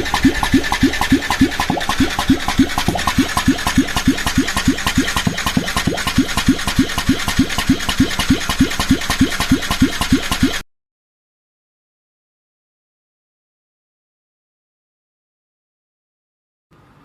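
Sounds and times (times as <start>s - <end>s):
engine cranking without firing: 0.0s - 10.6s.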